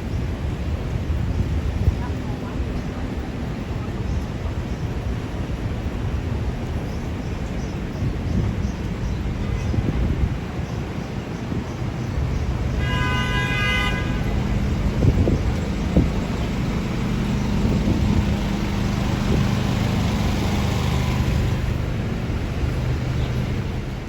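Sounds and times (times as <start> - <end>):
traffic engine rumble: 0.0 - 24.0
car horn honk: 12.8 - 15.3.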